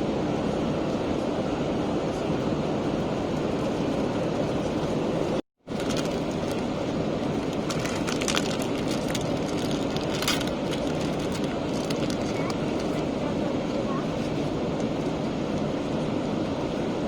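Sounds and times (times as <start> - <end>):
airliner cabin rumble: 0.0 - 17.0.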